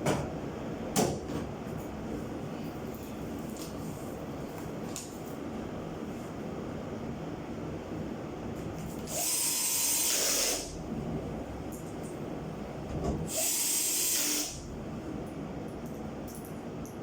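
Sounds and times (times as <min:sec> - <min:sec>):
power tool bursts: 0:09.1 - 0:10.7, 0:13.3 - 0:14.6.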